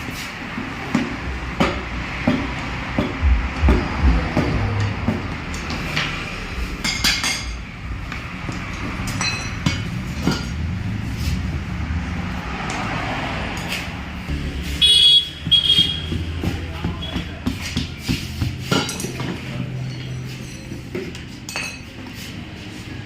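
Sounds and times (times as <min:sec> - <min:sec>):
steady low rumble: 0:03.2 - 0:05.1
metal tools clinking: 0:08.5 - 0:10.7, 0:18.7 - 0:22.0.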